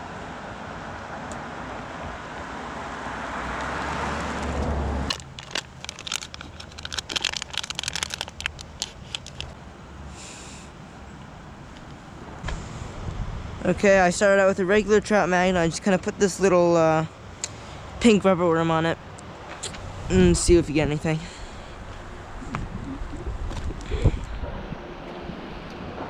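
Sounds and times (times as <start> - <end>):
crackling handling noises: 3.6 - 9.6
rushing noise with low rumble: 10.7 - 15.8, 19.0 - 26.0.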